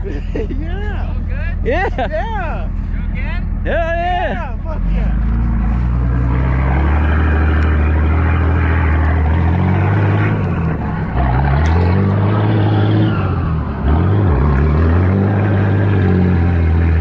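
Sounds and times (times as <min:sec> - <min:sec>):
car engine revving hard: 0:05.2 - 0:17.0.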